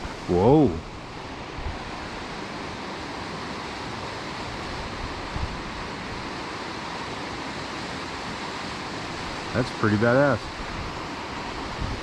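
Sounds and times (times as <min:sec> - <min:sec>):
water rushing: 0:00.0 - 0:12.0.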